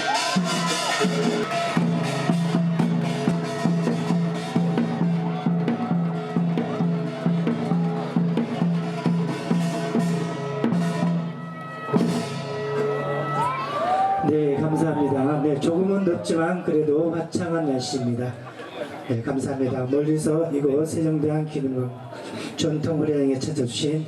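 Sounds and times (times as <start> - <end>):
music with steady drumbeat: 0.0 - 13.4.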